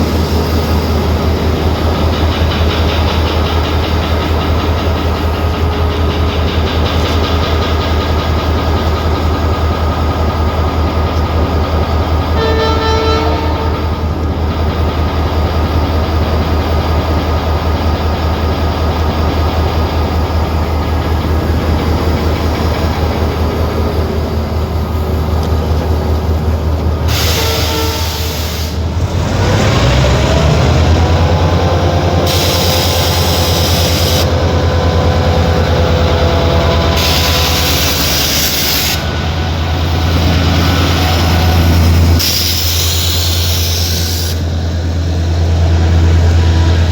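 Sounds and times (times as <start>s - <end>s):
train rumbling: 0.0s - 46.9s
train horn: 12.4s - 14.1s, 27.1s - 28.8s.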